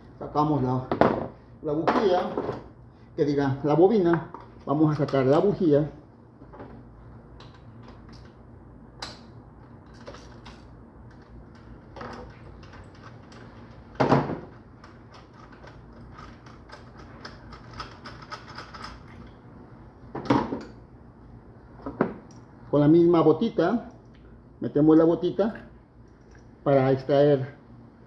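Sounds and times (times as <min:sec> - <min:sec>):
tools and engine parts clattering: 0:09.0 - 0:19.4.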